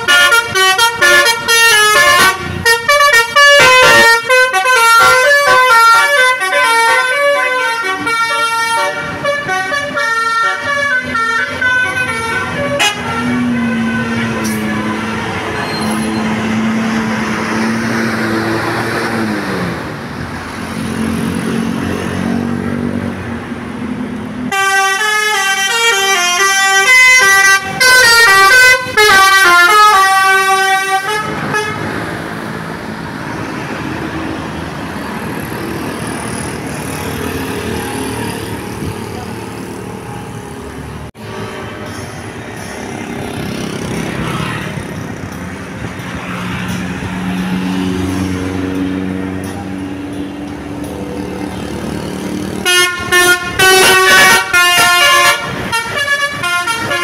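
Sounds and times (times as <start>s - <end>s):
multi-tone air horn tune: 0.0s - 16.2s, 24.5s - 31.8s, 52.6s - 57.0s
road noise: 0.0s - 57.0s.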